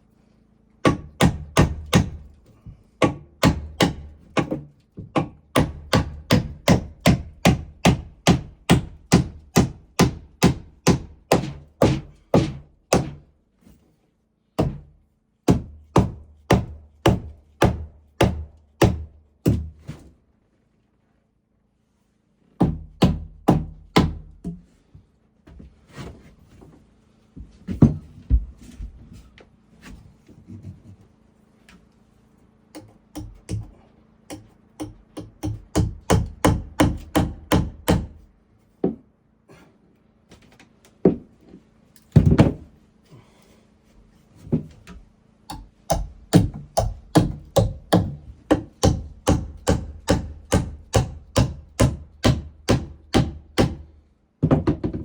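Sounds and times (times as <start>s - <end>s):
hammer driving nails into wood: 0.8s - 2.3s, 3.0s - 13.3s, 15.5s - 19.7s, 32.8s - 38.2s, 45.5s - 53.8s.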